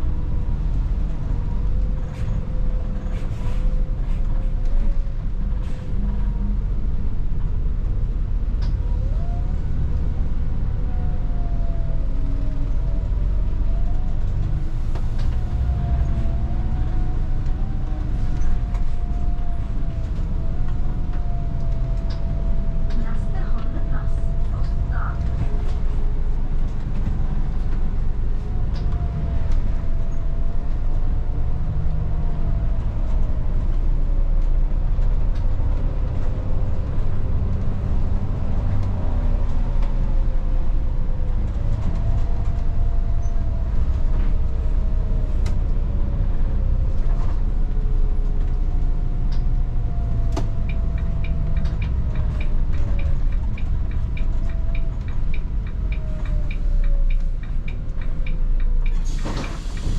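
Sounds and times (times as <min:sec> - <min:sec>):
bus engine rumble with whine: 0:00.0 - 0:59.9.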